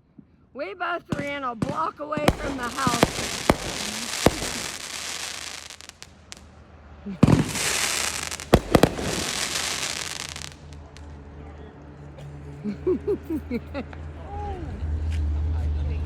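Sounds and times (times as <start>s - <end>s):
fireworks bangs: 1.1s - 6.5s, 7.1s - 10.8s
crackling hiss of fireworks: 1.1s - 11.2s.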